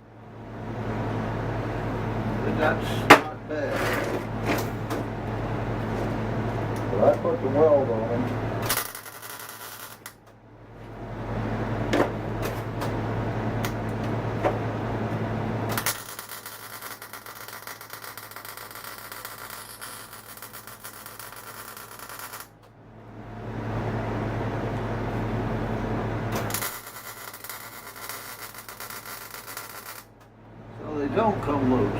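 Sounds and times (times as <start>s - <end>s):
welder hum: 0.0s - 31.9s
welding arc crackling: 8.4s - 10.4s, 11.9s - 22.7s, 26.1s - 30.3s.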